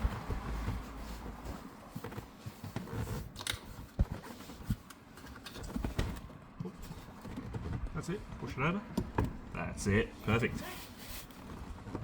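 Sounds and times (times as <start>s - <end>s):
light clicks and rustling: 0.4s - 9.6s.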